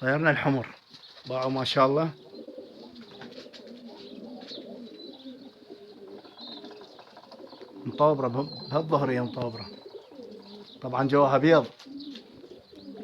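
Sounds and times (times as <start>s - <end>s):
pigeons cooing: 0.0s - 13.0s
high bird chirps: 3.9s - 11.3s, 11.9s - 13.0s.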